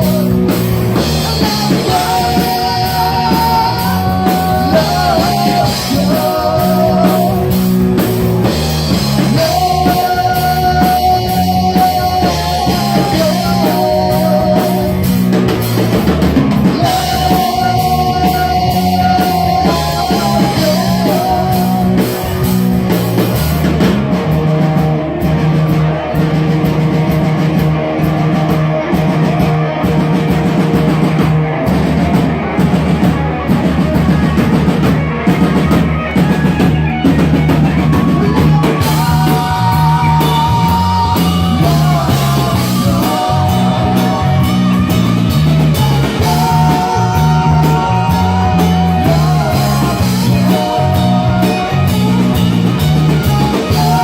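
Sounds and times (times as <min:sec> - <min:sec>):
rock band playing live: 0:00.0 - 0:54.0
held high guitar notes: 0:31.6 - 0:54.0.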